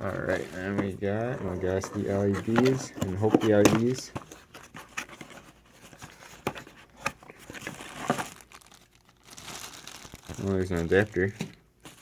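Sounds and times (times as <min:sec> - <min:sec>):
plastic packaging crinkling: 0:07.4 - 0:12.0.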